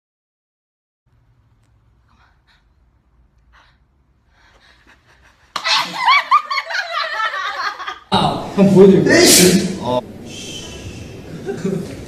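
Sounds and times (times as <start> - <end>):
laughter: 4.9 - 8.1, 11.4 - 12.0.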